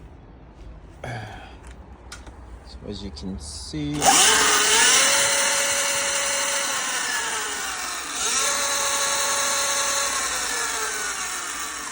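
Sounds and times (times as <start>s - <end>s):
electric dirt bike motor whining: 4.0s - 11.9s.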